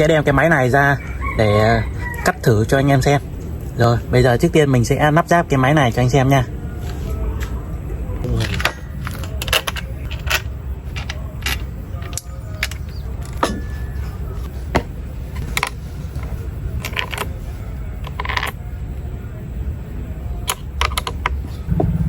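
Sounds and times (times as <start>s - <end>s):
steady low hum: 2.4s - 22.0s
plastic and metal parts clicking: 8.3s - 13.6s, 20.5s - 21.5s.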